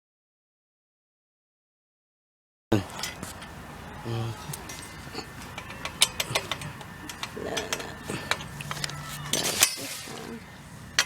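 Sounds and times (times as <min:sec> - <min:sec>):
metal parts and bolts clinking: 0:04.5 - 0:11.0.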